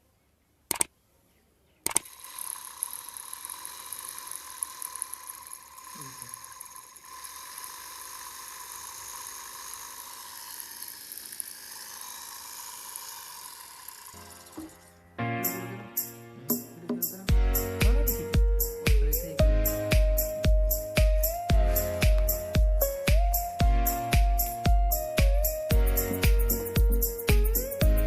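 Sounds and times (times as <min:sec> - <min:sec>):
switch click: 0:01.8 - 0:02.0
small electric motor whining: 0:02.0 - 0:15.0.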